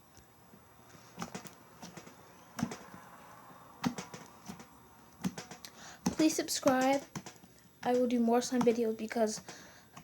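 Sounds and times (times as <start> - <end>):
slime squishing with pops: 3.8 - 10.0.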